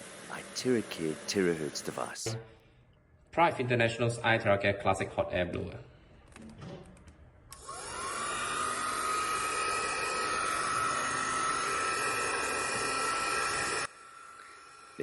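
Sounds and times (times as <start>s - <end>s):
hair dryer running: 7.6s - 13.9s.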